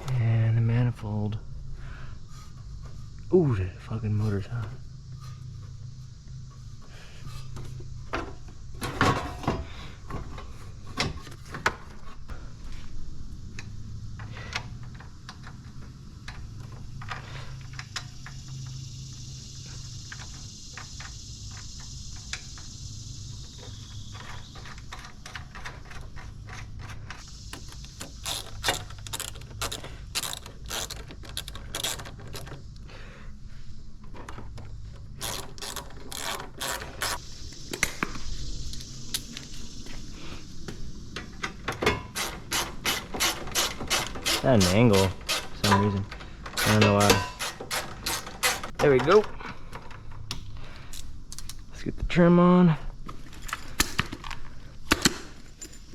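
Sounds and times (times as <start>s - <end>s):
hand tools clicking and knocking: 24.1s - 32.6s, 34.1s - 37.2s, 41.2s - 50.4s
ratchet clicking: 24.2s - 32.6s, 35.2s - 37.2s, 42.1s - 45.9s, 46.5s - 48.8s.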